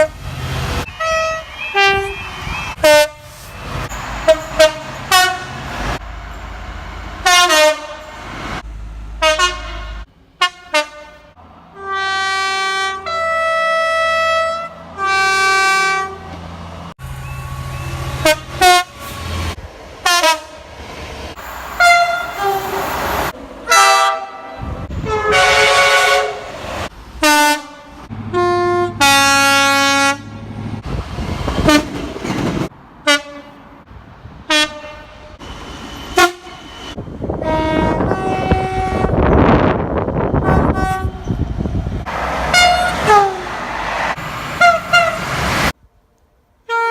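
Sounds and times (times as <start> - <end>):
train horn blasts: 0.9 - 3.4, 4.2 - 5.6, 7.2 - 8.1, 9.2 - 16.4, 17.8 - 19.2, 20.0 - 20.6, 21.8 - 23.0, 23.7 - 26.5, 27.2 - 30.4, 33.0 - 33.6, 34.5 - 35.4, 36.2 - 36.6, 37.3 - 39.5, 40.3 - 41.4, 42.5 - 43.5, 44.6 - 45.2, 46.7 - 46.9
two-tone train horn call: 1.0 - 2.2, 2.8 - 3.4, 4.2 - 5.5, 7.2 - 8.1, 9.2 - 16.3, 18.2 - 19.0, 20.0 - 20.6, 21.8 - 22.9, 23.7 - 26.5, 27.2 - 30.4, 33.0 - 33.6, 34.5 - 35.4, 36.2 - 36.6, 37.3 - 39.3, 40.4 - 41.4, 42.5 - 43.4, 44.6 - 45.2, 46.7 - 46.9.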